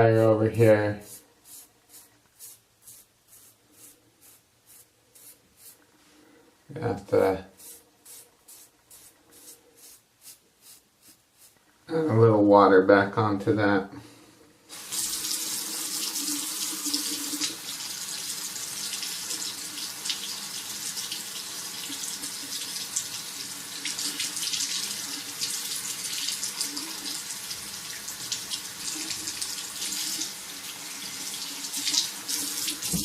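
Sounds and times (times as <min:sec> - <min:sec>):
tap water running into sink: 0:14.7 - 0:33.0.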